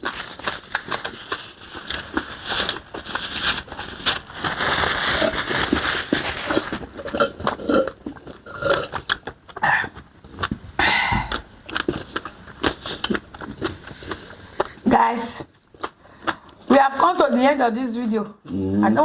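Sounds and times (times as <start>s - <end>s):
wet chewing and lip smacks: 7.2s - 16.7s.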